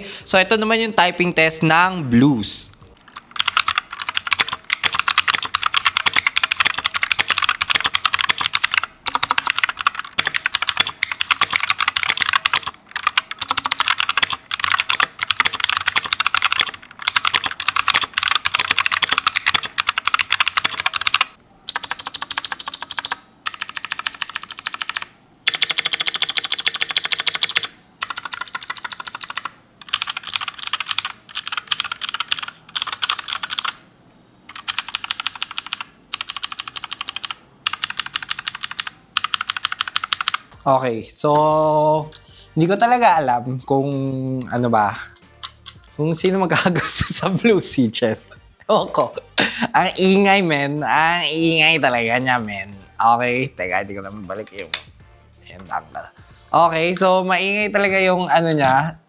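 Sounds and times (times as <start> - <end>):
mechanical keyboard typing: 3.0 - 33.8, 34.5 - 40.5.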